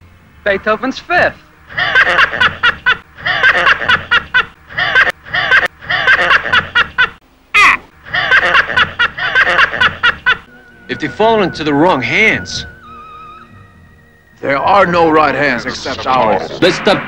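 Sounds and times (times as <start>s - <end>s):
person laughing loudly: 1.7s - 10.5s.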